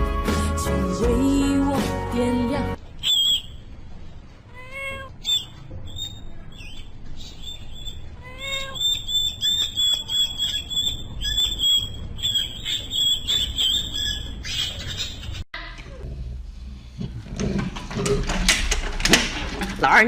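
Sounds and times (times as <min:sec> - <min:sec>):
small animal squeaking: 0:04.6 - 0:15.4.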